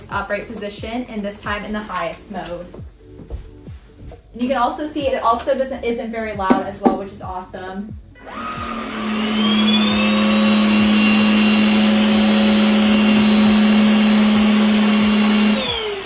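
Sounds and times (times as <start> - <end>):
vacuum cleaner motor whine: 8.2 - 16.0.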